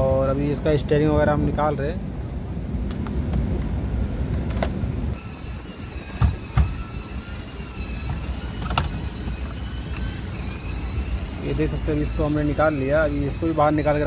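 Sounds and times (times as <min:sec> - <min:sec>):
faint high whine: 0:05.0 - 0:14.0.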